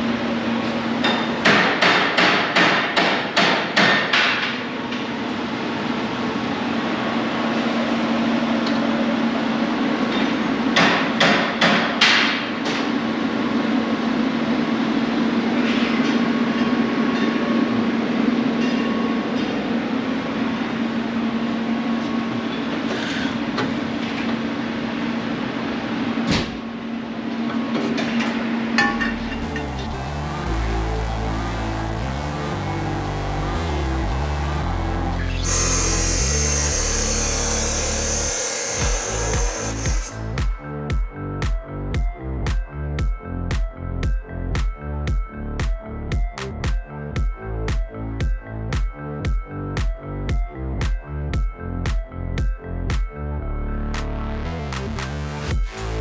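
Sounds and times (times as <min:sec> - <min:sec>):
steady machine hum: 0:28.5 - 0:40.5
hammer blows on metal: 0:35.5 - 0:40.6.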